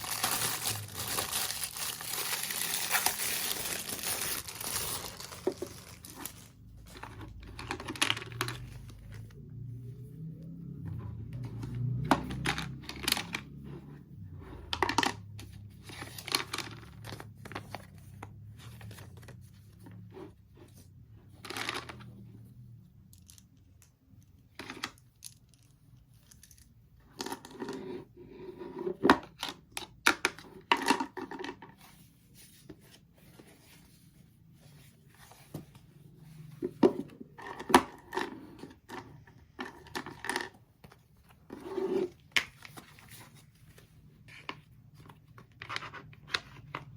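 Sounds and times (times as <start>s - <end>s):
packaging rustling and tearing: 0.0s - 9.1s.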